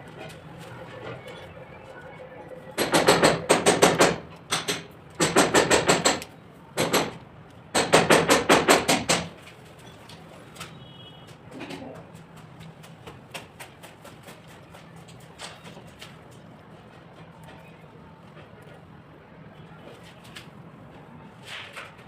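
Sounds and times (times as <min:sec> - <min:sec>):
rapid sharp knocking: 0:02.8 - 0:09.4.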